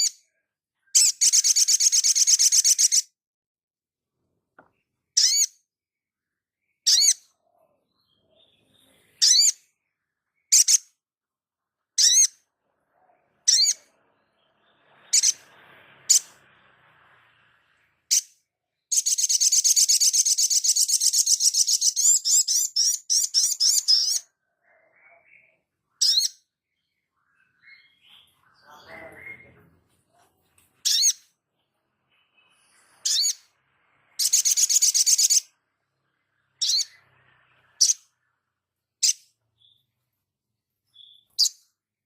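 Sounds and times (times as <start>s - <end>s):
sunbird rapid trill: 33.1s - 35.6s.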